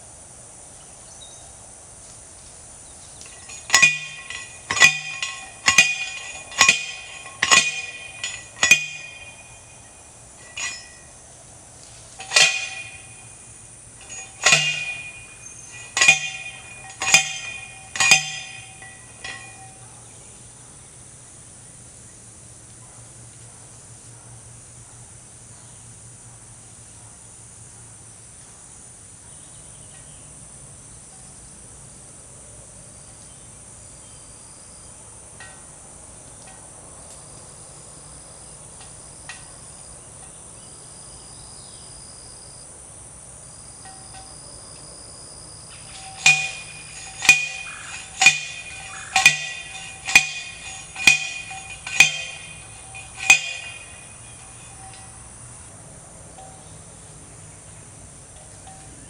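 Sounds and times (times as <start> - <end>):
insects droning: 0.0 - 59.0
post driver clanging on steel post: 3.2 - 11.2, 11.8 - 20.0, 45.7 - 55.3.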